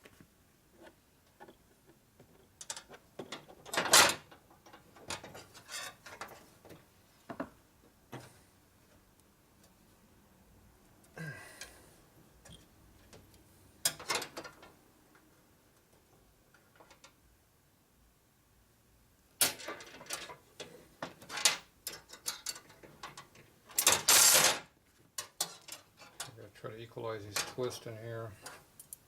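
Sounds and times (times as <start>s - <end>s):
metal brake line and tools clicking: 28.4s - 29.0s.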